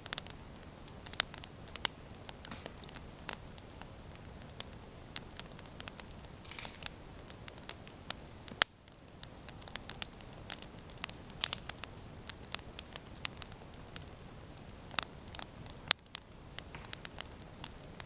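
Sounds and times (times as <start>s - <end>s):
wood campfire crackling: 0.0s - 18.0s.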